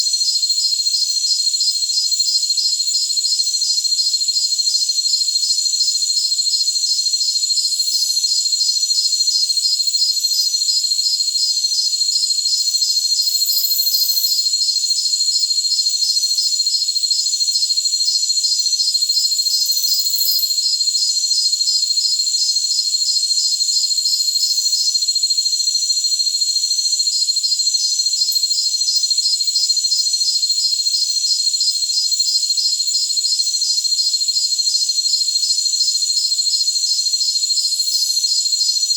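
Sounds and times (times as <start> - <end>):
crickets trilling in chorus: 0.0 - 38.9.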